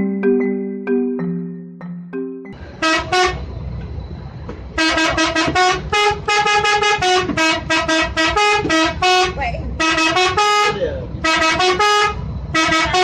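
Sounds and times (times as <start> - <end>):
low rumbling noise: 2.6 - 13.0
musical bus air horn toots: 2.8 - 3.5, 4.8 - 13.0.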